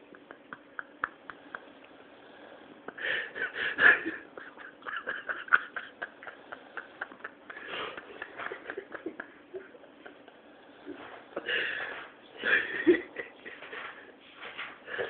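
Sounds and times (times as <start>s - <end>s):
person snoring: 1.3s - 3.6s.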